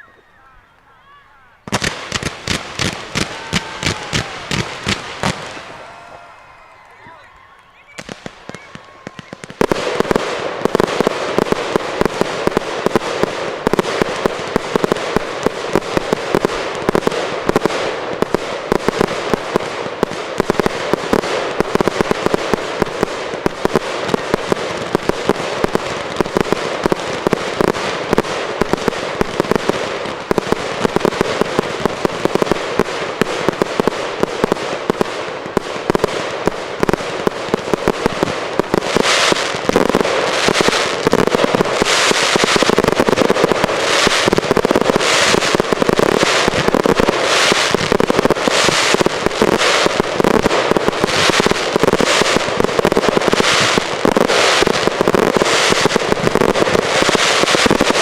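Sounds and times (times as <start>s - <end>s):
fireworks crackling and banging: 0.0s - 58.0s.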